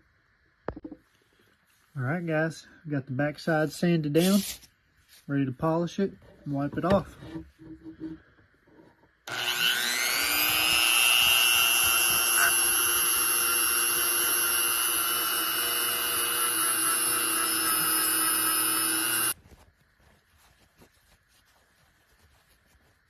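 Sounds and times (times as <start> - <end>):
power polisher motor whining: 9.3 - 19.4.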